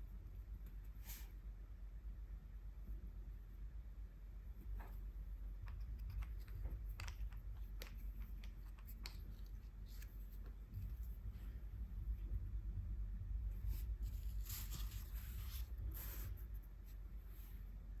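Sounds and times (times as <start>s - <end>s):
brush strokes on paper: 13.6s - 17.7s.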